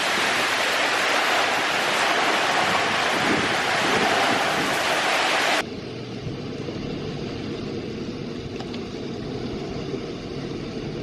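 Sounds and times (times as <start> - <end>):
heavy rain: 0.0 - 5.6
storm wind buffeting microphone: 0.0 - 5.6.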